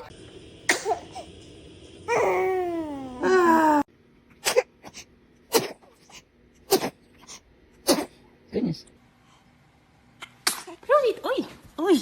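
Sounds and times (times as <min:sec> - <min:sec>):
baby sneezing: 0:04.4 - 0:08.2.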